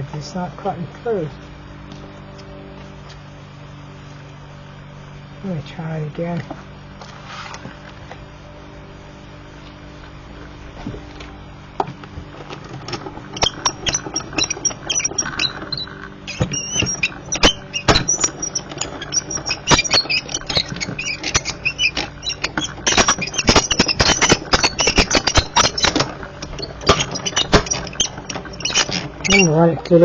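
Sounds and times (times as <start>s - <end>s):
die-cutting machine clicks and squeaks: 12.5s - 30.0s.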